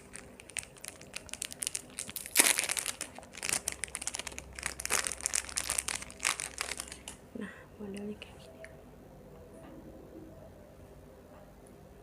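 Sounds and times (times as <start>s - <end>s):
jewellery packaging crinkling: 0.0s - 7.2s.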